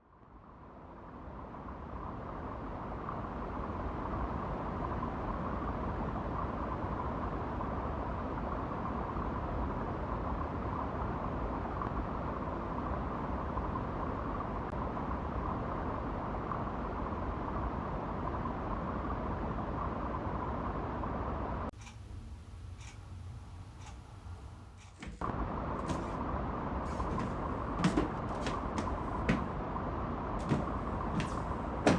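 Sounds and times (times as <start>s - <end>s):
steady droning hum: 21.7s - 31.9s.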